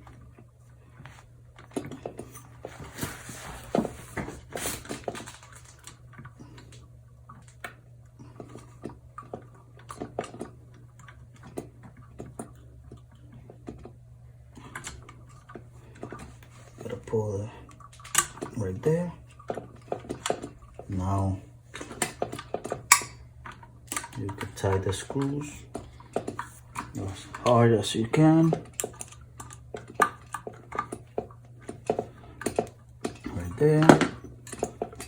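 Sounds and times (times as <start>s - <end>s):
steady low hum: 0.0s - 35.0s
metal and plastic parts rattling: 1.6s - 7.6s, 14.6s - 35.0s.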